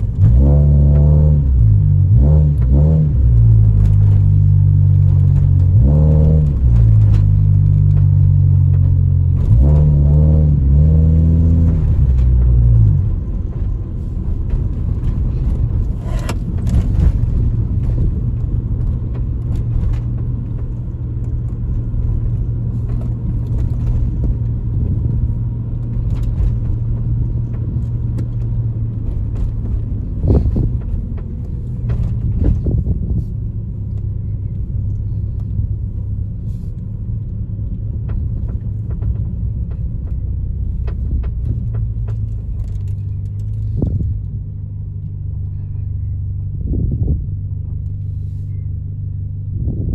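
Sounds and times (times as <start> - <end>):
engine knocks: 11.6 - 34.4, 37.7 - 45.5.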